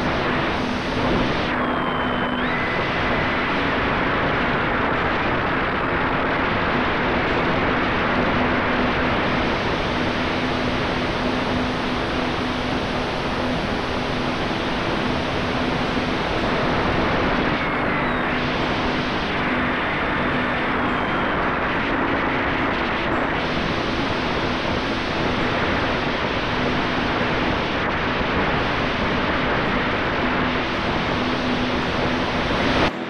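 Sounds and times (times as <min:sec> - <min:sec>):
wind rushing over microphone: 0:00.0 - 0:32.9.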